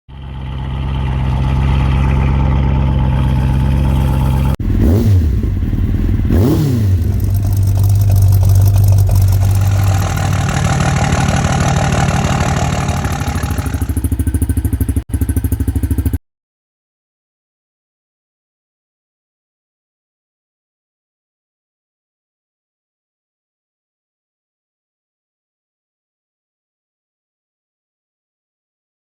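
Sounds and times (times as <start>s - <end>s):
car engine idling and revving: 0.1s - 16.2s.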